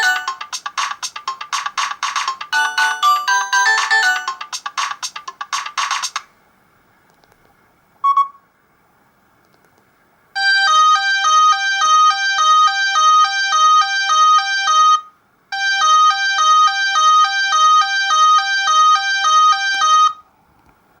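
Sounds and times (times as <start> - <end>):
electronic ringtone melody: 0.0 - 6.2, 10.4 - 20.2.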